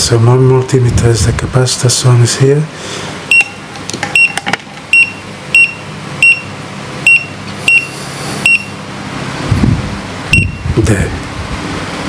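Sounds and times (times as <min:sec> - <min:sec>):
multimeter high beeps: 0:03.3 - 0:03.6, 0:04.2 - 0:08.8, 0:10.3 - 0:10.6.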